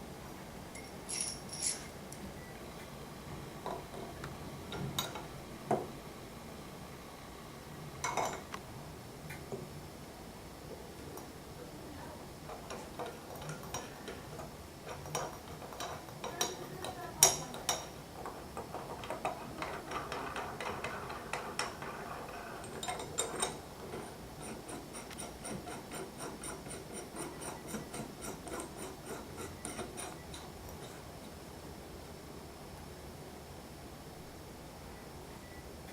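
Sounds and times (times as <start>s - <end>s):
metal tools clinking: 0.7s - 1.9s.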